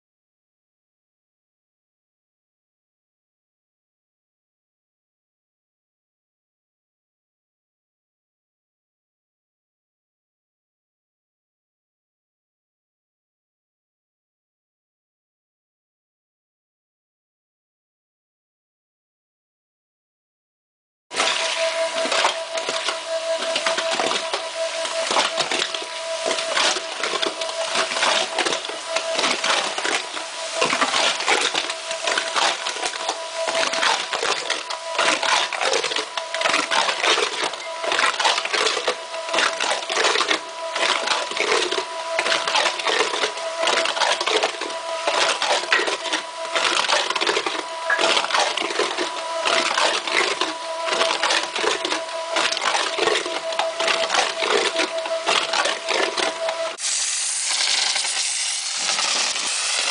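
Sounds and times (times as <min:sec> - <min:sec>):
mortar pump whine: 0:21.1 - 0:59.9
mortar spraying rattle: 0:56.8 - 0:59.9.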